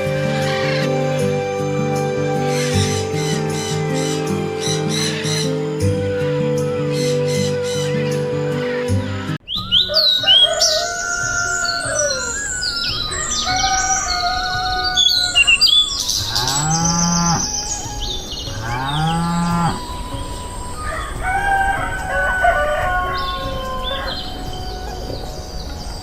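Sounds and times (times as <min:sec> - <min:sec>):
small birds chirping: 0:00.0 - 0:26.0
cow mooing: 0:16.2 - 0:17.6, 0:18.6 - 0:19.9.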